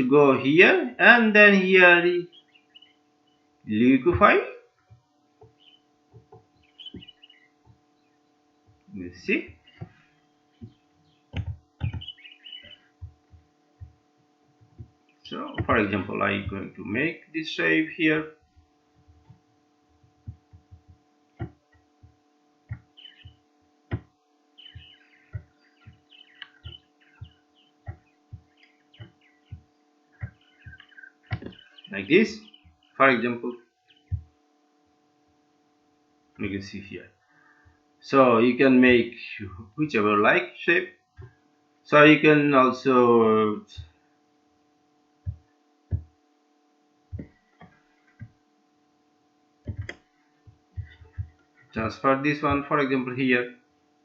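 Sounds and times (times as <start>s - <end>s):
steady electrical hum: 0.0s - 54.0s
faint high chirps: 2.1s - 4.4s, 5.5s - 5.9s, 6.5s - 13.0s, 22.8s - 23.5s, 24.5s - 34.2s
soft low knocks: 10.6s - 14.0s, 18.5s - 32.8s.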